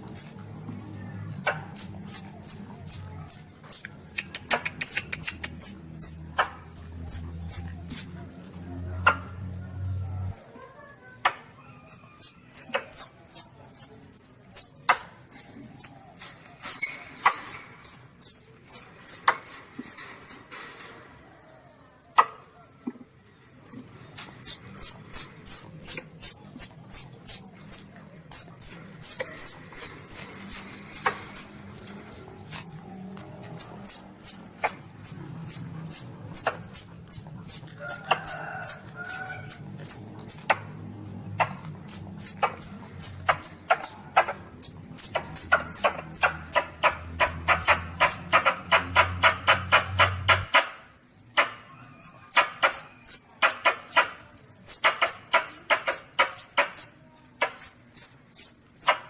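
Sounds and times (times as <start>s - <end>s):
sharp clicks: 1.4s - 8.2s, 23.7s - 50.8s, 51.4s - 59.0s
civet kitten squeaking: 1.7s - 8.1s, 11.6s - 20.8s, 24.1s - 40.6s, 41.5s - 48.5s, 51.8s - 59.0s.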